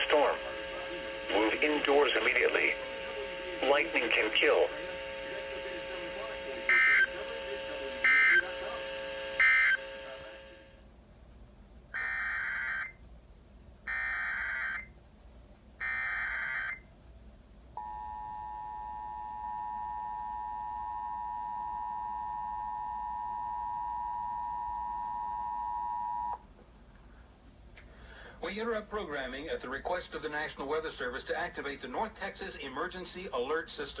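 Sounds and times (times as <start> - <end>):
data burst: 0.0 - 10.6
two-tone attention signal: 8.0 - 10.2, 17.8 - 26.4
warbling header data tones: 17.8 - 26.4.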